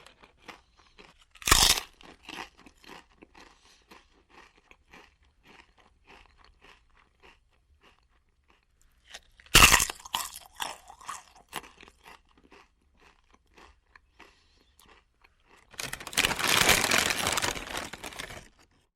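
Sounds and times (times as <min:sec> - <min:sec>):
loud bite into a chip: 0:00.0 - 0:05.1, 0:09.1 - 0:18.7
crunchy chewing of chips: 0:00.0 - 0:18.9
dense loud crackling: 0:15.8 - 0:18.4.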